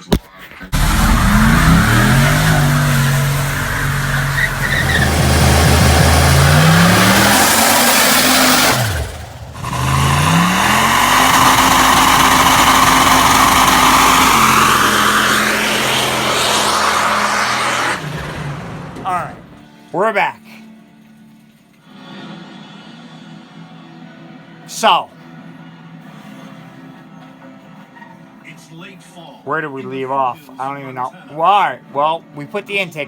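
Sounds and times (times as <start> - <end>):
car engine revving: 0.7 - 19.6
tires squealing: 0.7 - 19.6.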